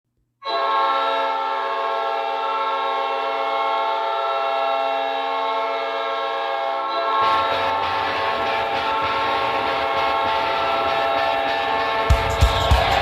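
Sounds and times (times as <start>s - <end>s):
goal horn blast: 0.4s - 13.0s.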